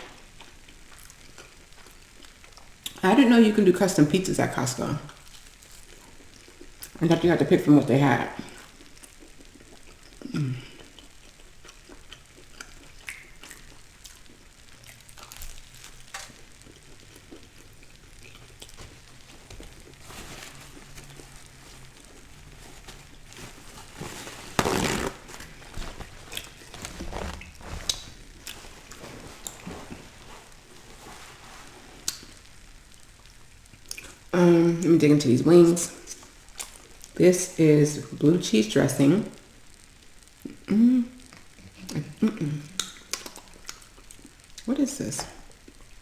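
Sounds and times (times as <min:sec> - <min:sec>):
quiet chewing: 0:00.0 - 0:03.0, 0:05.0 - 0:07.0, 0:08.4 - 0:24.6, 0:25.2 - 0:32.5, 0:33.2 - 0:34.3, 0:40.4 - 0:44.7
handling rustles: 0:18.7 - 0:32.4.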